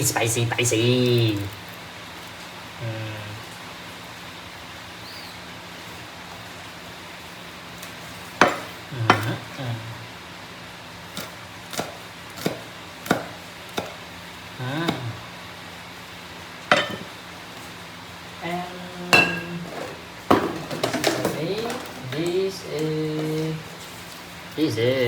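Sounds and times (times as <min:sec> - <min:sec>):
knife chopping on cutting board: 0:11.2 - 0:14.0, 0:14.8 - 0:15.1.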